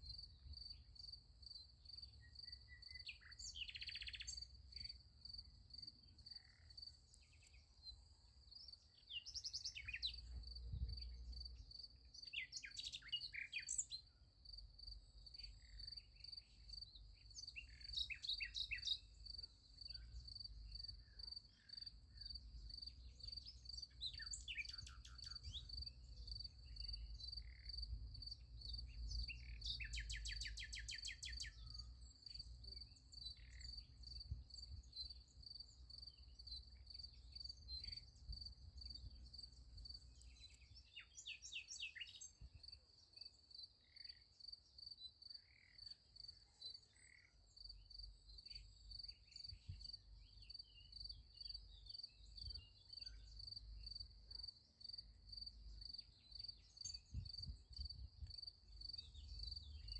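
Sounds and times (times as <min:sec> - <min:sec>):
songbirds singing: 0:00.0 - 0:59.9
crickets chirping: 0:14.0 - 0:59.9.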